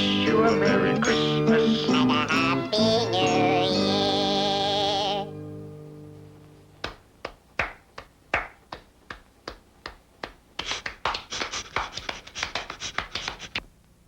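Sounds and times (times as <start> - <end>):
people clapping hands: 6.8 - 13.6.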